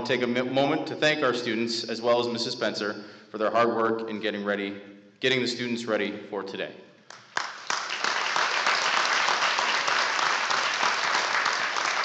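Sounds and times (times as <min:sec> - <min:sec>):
large audience clapping: 0:07.1 - 0:12.0.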